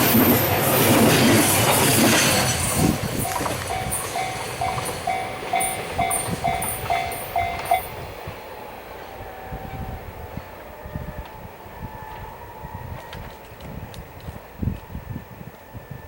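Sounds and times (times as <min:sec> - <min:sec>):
level crossing warning bell: 0:00.0 - 0:08.2
passing train rumble: 0:00.0 - 0:16.0.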